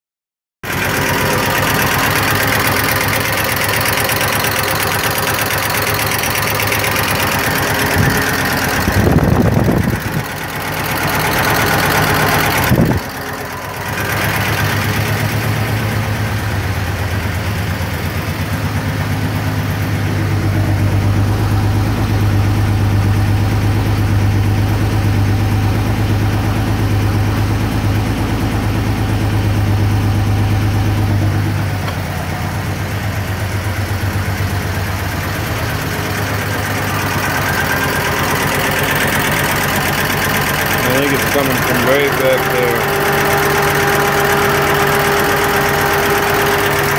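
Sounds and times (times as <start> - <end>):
car engine idling with ticking: 0.6 - 46.9
strong low hum: 7.5 - 24.2.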